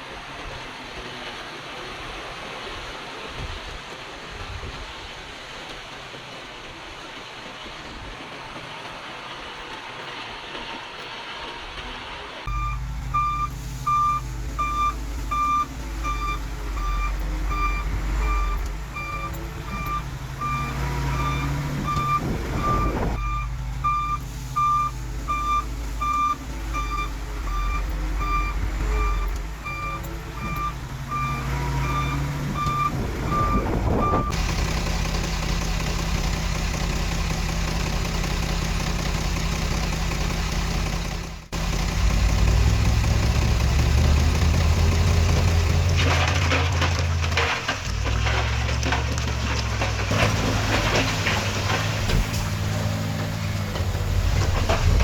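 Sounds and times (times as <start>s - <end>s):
diesel engine rumble: 0.0s - 55.0s
backup alarm beeping: 12.5s - 34.4s.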